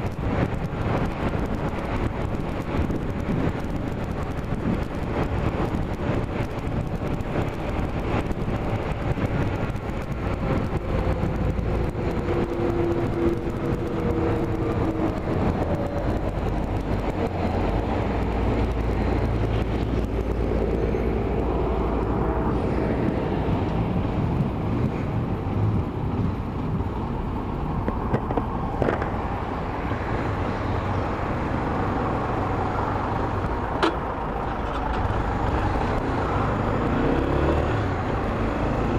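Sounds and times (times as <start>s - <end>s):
road vehicle low rumble: 0.0s - 38.9s.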